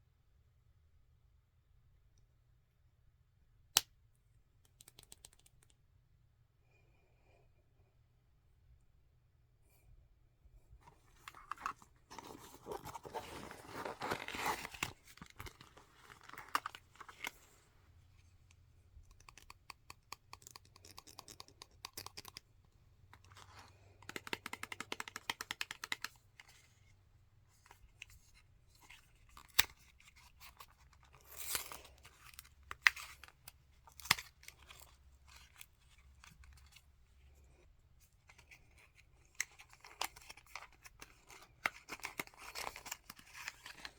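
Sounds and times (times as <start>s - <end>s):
packaging crinkling and tearing: 11.2s - 17.4s, 29.3s - 36.7s, 39.4s - 43.9s.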